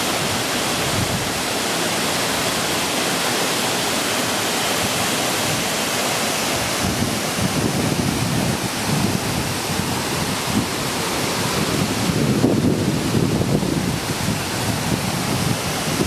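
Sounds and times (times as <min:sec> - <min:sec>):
wind buffeting microphone: 0:00.0 - 0:01.6, 0:06.5 - 0:16.0
waterfall rushing: 0:00.0 - 0:16.0.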